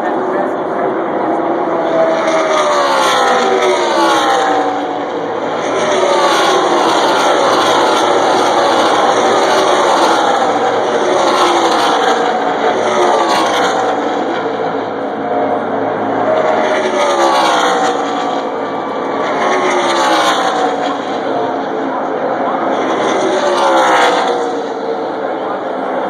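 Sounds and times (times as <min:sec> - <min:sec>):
race truck engines passing: 0:00.0 - 0:26.0.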